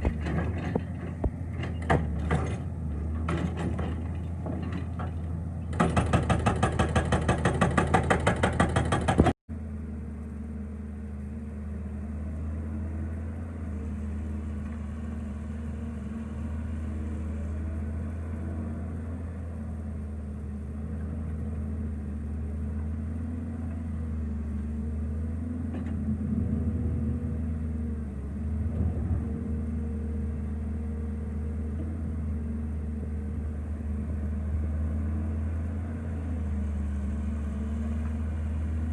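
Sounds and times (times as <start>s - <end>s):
excavator diesel engine running: 0.0s - 38.9s
hydraulic breaker hammering rock: 5.7s - 9.4s.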